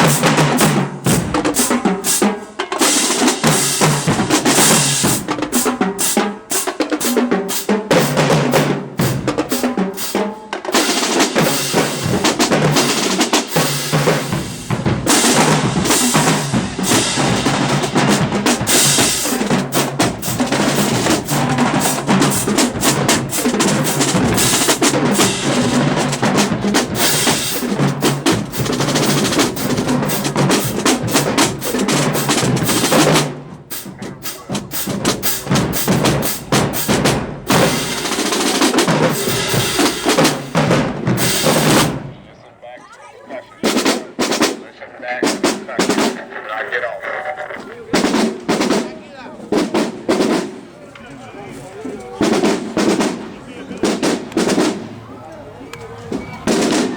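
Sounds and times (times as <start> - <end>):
marching band playing: 0.0 - 56.9
marching drums: 0.0 - 56.9.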